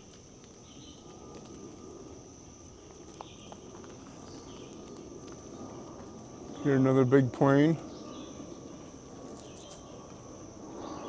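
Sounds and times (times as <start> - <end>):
airplane rumbling overhead: 0.0 - 11.0
high insect drone: 0.0 - 11.0
faint bird chirps: 7.8 - 10.1.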